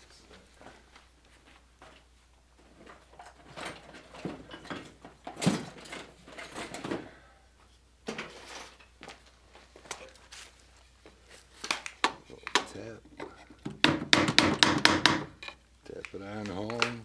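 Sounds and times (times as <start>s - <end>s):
wooden parts rubbing and knocking: 11.1s - 17.0s.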